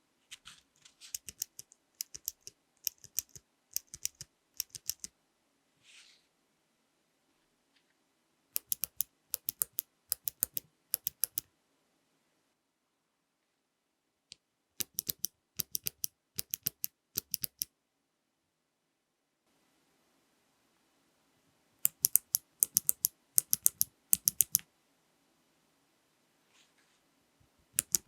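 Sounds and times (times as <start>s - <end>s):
mechanical keyboard switch clicks: 1.2s - 5.1s, 8.6s - 11.4s, 14.8s - 17.7s, 21.9s - 24.6s, 27.8s - 28.0s.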